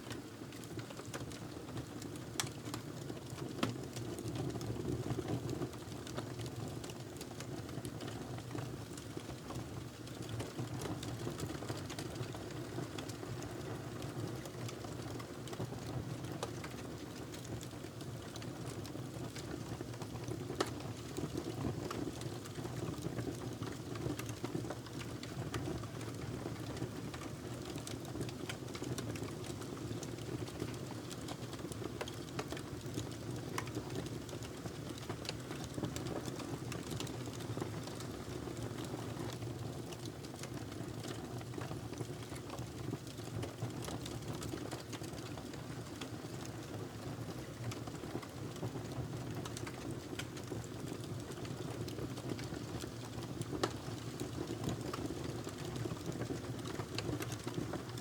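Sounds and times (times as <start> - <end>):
fire crackling in fireplace: 0.1 - 58.0.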